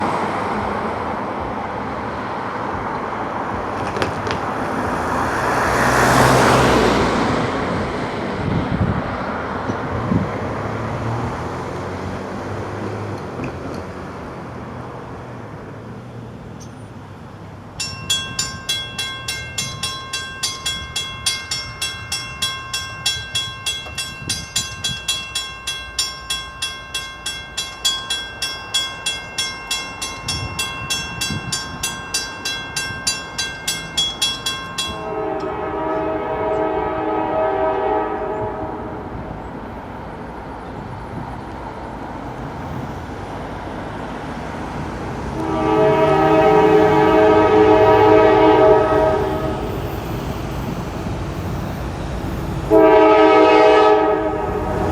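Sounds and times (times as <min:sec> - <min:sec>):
railroad crossing bell ringing: 0:17.4 - 0:38.4, 0:44.2 - 0:54.9
locomotive horn: 0:34.9 - 0:39.2, 0:45.3 - 0:50.0, 0:52.6 - 0:54.9.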